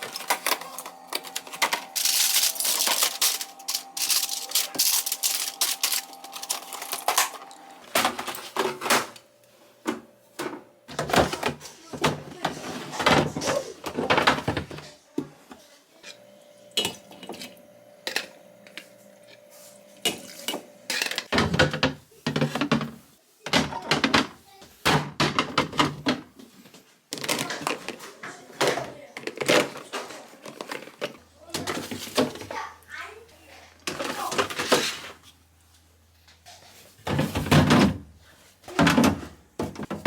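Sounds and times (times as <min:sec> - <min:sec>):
dishes clicking and clattering: 0:16.7 - 0:18.9.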